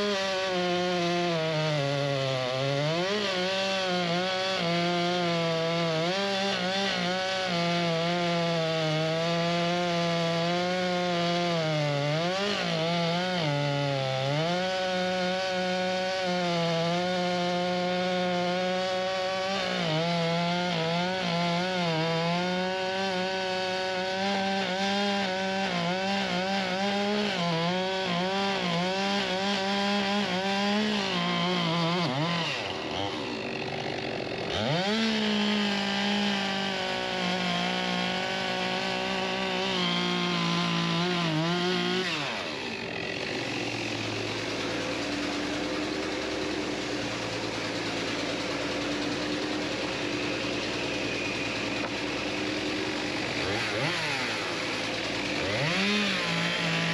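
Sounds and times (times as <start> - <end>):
chainsaw cutting through wood: 0.0 - 56.9.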